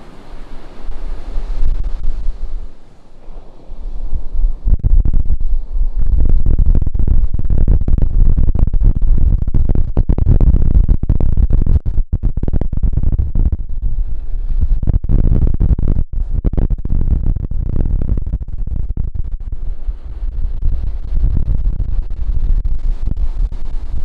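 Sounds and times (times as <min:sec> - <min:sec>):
surf: 0:00.0 - 0:06.4
wind buffeting microphone: 0:00.0 - 0:24.0.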